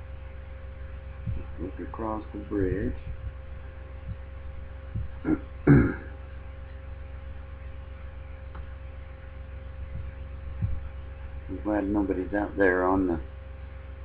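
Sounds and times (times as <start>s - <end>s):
electrical mains hum: 0.0s - 14.0s
man clearing throat: 5.2s - 6.2s.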